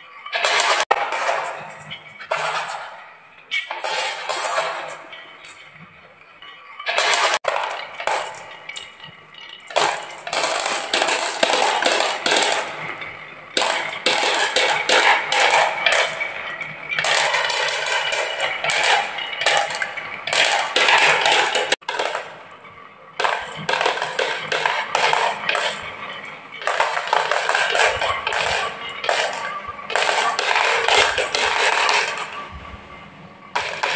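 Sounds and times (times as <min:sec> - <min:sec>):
marbles rattling down wooden run: 0:09.7 - 0:12.9, 0:13.6 - 0:16.4, 0:26.6 - 0:32.4.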